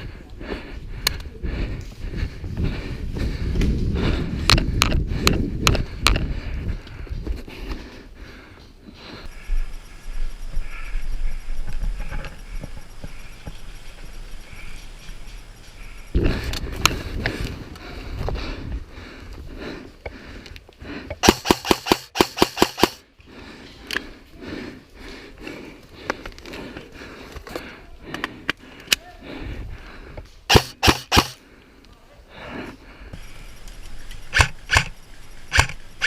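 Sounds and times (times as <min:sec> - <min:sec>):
airsoft rifle shots: 0:21.2 - 0:23.0, 0:30.5 - 0:31.4, 0:34.3 - 0:34.9, 0:35.5 - 0:35.8.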